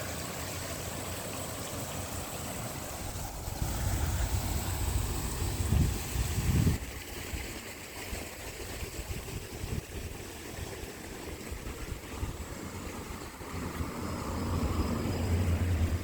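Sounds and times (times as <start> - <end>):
outdoor hiss: 0.0 - 8.0
wind buffeting microphone: 3.0 - 7.4, 8.7 - 10.3.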